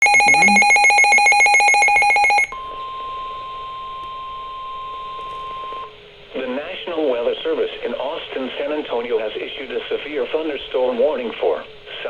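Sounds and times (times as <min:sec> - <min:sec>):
steady alert tone: 0:00.0 - 0:02.5
pulsing electronic alarm beep: 0:00.0 - 0:03.2.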